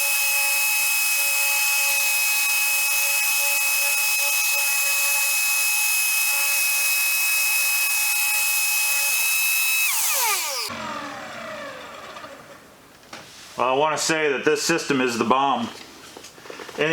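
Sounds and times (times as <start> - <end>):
power sander running: 0.0 - 12.8
shop vacuum running: 6.9 - 12.8.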